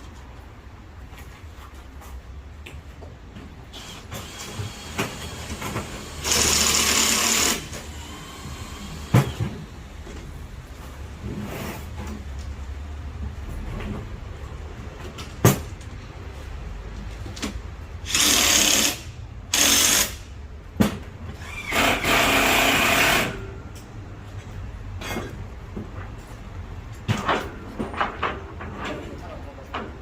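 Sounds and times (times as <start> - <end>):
power drill drilling: 3.8 - 9.4, 18.1 - 20.2.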